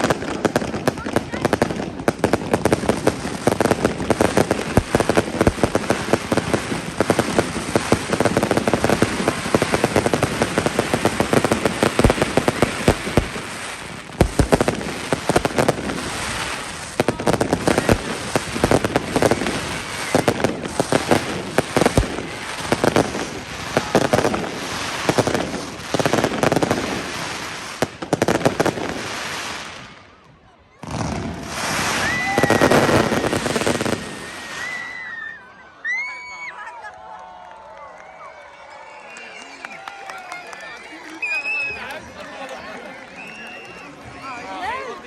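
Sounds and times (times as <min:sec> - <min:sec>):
deep firework booms: 0:00.0 - 0:30.0, 0:30.8 - 0:34.6
fireworks crackling: 0:00.0 - 0:45.0.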